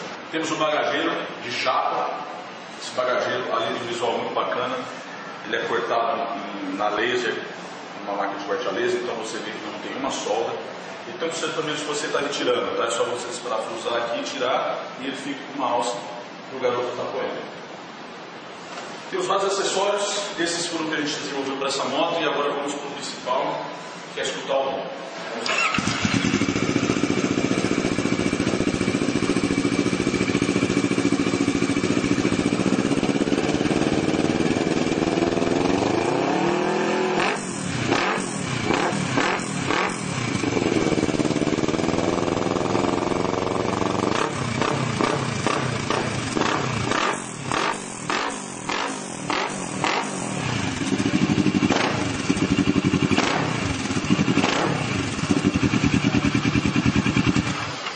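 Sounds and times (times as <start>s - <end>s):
motorcycle engine revving: 25.5s - 57.8s.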